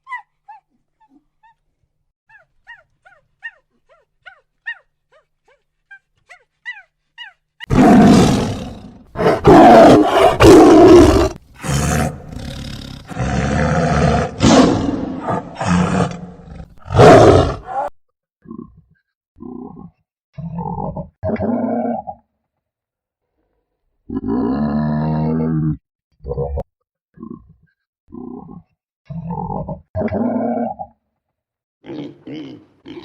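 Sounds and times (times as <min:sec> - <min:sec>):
large animal roaring: 0:07.7 - 0:17.9.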